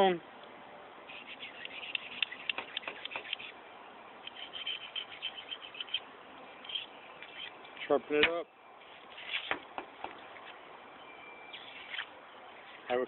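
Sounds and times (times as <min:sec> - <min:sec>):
knife scraping sharpening stone: 0:01.1 - 0:03.5.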